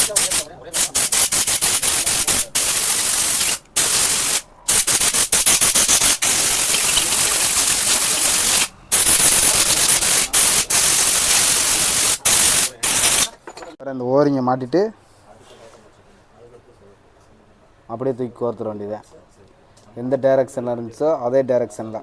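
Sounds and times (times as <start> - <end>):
pressurised jet hissing: 0.0 - 13.3.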